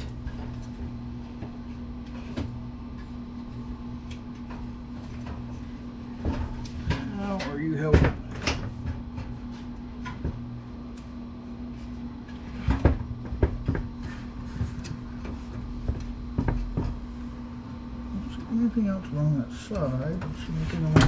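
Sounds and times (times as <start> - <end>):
steady low hum: 0.0 - 21.0
knocks and clanks of metal computer case: 6.2 - 10.5, 12.3 - 17.1, 20.8 - 21.0.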